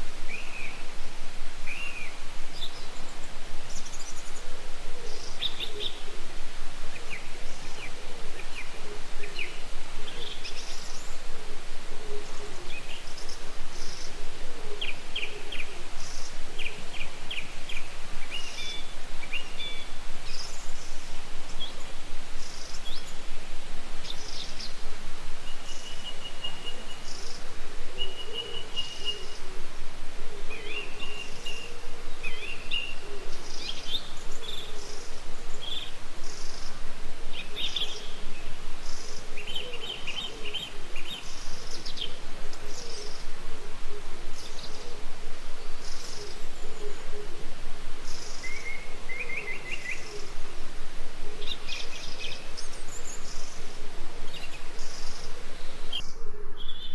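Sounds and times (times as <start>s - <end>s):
background hiss: 0.0s - 56.9s
birds chirping and singing: 25.6s - 29.5s, 30.4s - 56.9s.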